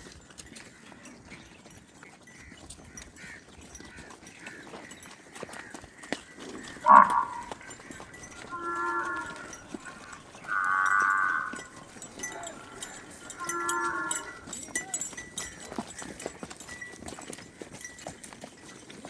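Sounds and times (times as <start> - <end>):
water buffalo mooing: 6.6 - 7.7, 8.4 - 14.5.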